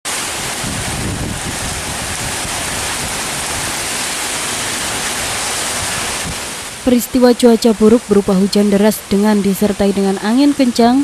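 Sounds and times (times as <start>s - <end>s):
wind buffeting microphone: 0.1s - 6.7s
heavy rain hiss: 0.1s - 11.0s.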